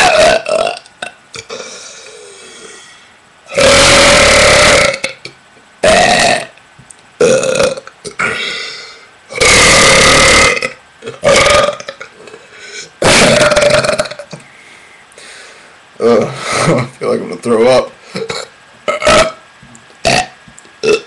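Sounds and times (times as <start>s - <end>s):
person belching loudly: 0.0s - 1.9s, 3.5s - 6.6s, 7.2s - 8.6s, 9.3s - 12.4s, 13.0s - 14.4s, 16.0s - 16.8s, 18.1s - 19.4s, 20.0s - 21.0s.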